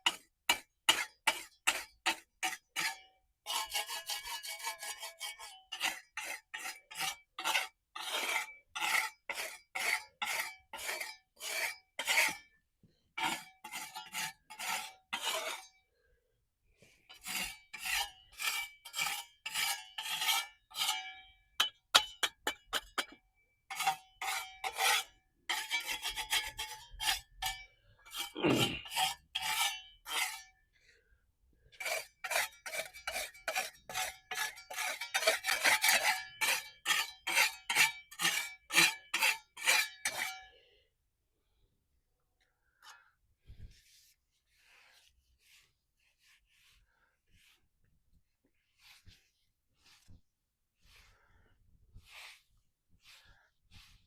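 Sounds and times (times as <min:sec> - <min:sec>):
scraping mortar off concrete: 0:00.0 - 0:12.6, 0:13.2 - 0:15.7, 0:17.1 - 0:21.0, 0:21.6 - 0:30.5, 0:31.8 - 0:40.3.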